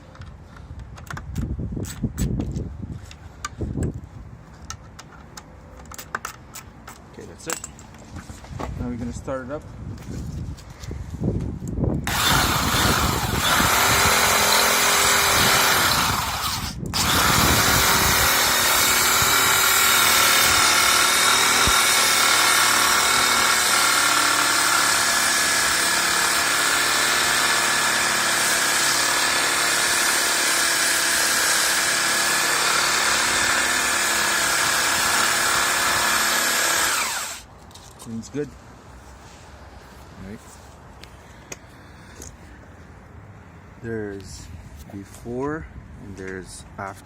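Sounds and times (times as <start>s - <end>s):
electric drill motor whine: 12.0s - 37.4s.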